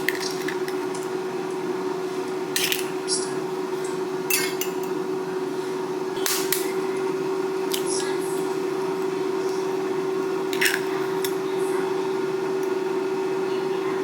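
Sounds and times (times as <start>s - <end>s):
air fryer humming: 0.0s - 14.0s
kitchen utensils clicking and scraping: 2.6s - 3.2s, 4.3s - 5.0s, 10.5s - 11.4s.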